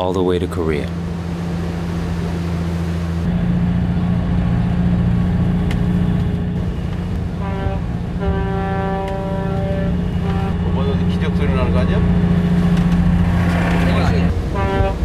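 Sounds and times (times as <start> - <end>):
boat engine running: 0.0 - 15.0
ship's horn blasts: 0.9 - 15.0.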